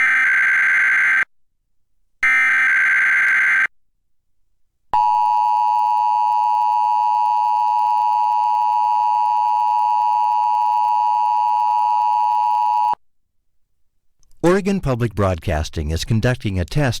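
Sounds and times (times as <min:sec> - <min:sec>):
harsh two-tone alarm: 0:00.0 - 0:01.3, 0:02.2 - 0:03.7, 0:05.0 - 0:13.0.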